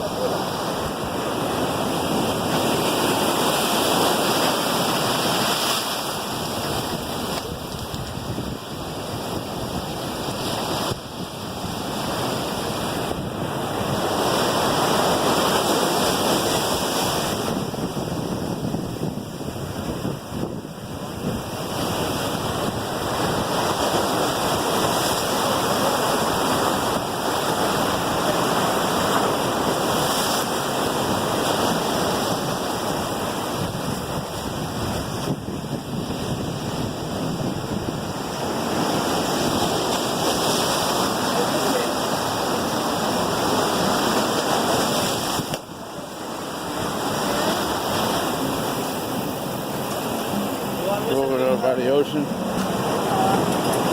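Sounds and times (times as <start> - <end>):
ocean surf breaking: 0.0 - 53.9
wind on microphone: 0.0 - 53.9.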